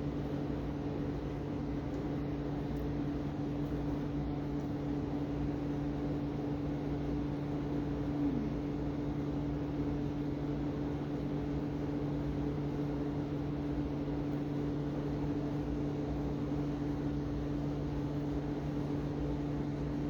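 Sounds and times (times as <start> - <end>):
steady mechanical hum: 0.0 - 20.0.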